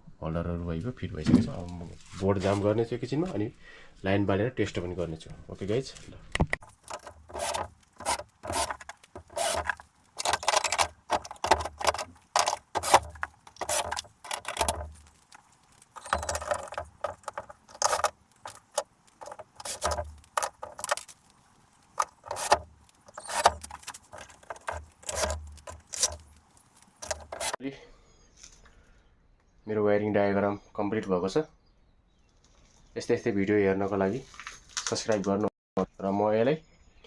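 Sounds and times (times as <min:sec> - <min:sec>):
clicks and scrapes of tools: 0:06.6 - 0:27.6.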